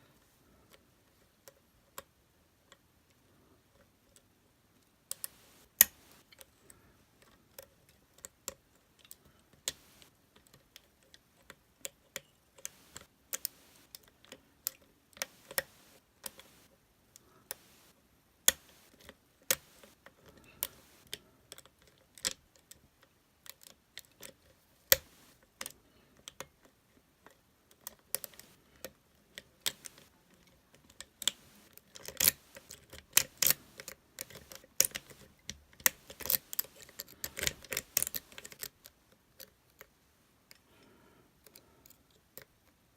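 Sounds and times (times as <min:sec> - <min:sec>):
lock picks clicking in padlock: 0:30.9 - 0:35.2.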